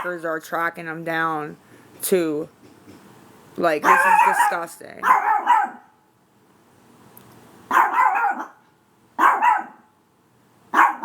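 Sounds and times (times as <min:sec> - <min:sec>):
dog barking: 0:03.8 - 0:06.0, 0:07.7 - 0:08.6, 0:09.2 - 0:09.9, 0:10.7 - 0:11.0.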